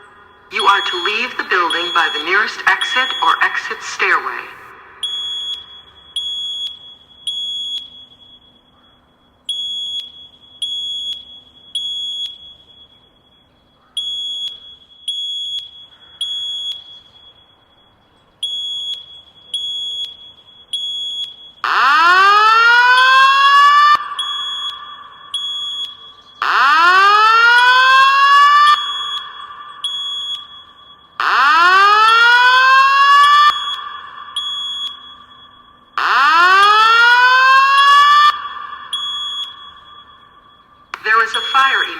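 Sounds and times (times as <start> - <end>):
high alarm beeps: 0.0 - 41.9
rising whoop alarm: 21.7 - 35.4, 36.0 - 40.4.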